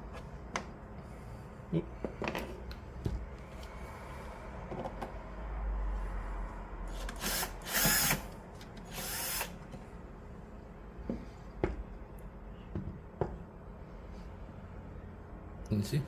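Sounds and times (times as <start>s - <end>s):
power drill whirring: 6.9s - 9.6s.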